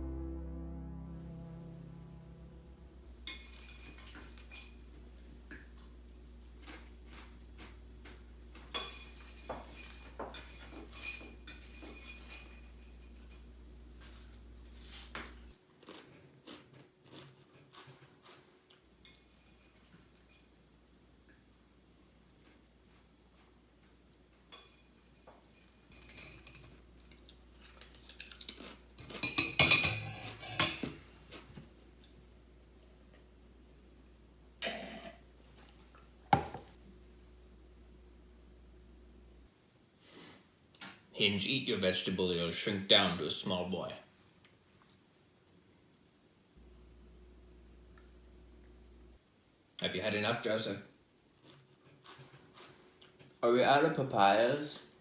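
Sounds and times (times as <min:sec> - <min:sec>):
steady low hum: 0:00.0 - 0:15.5, 0:31.7 - 0:39.9, 0:46.5 - 0:49.6
dishes and cutlery clinking: 0:08.6 - 0:13.4, 0:24.4 - 0:26.8, 0:28.2 - 0:31.0, 0:34.6 - 0:35.2.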